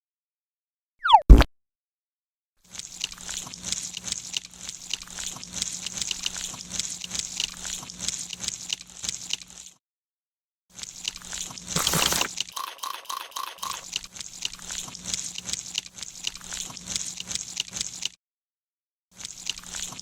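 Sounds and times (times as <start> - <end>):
short beeps: 1.0 - 1.4
wet crunching and chewing: 19.2 - 20.0.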